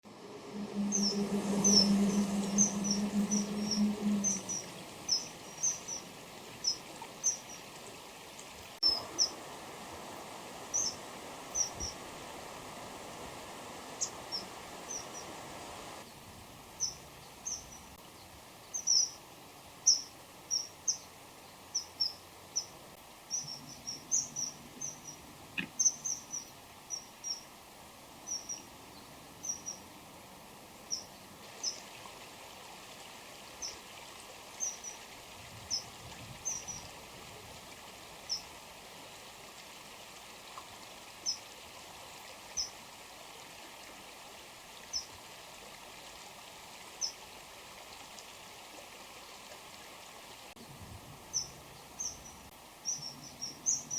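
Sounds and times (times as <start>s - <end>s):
kingfishers calling: 0.6s - 7.6s.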